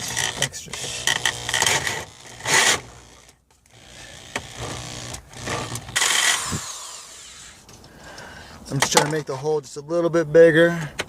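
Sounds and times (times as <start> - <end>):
plastic being scraped: 0.0 - 7.7.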